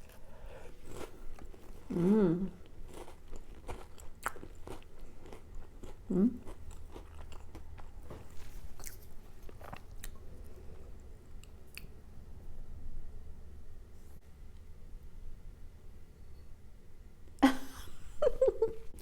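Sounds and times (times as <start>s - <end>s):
crunching and chewing crackers: 0.0s - 12.0s.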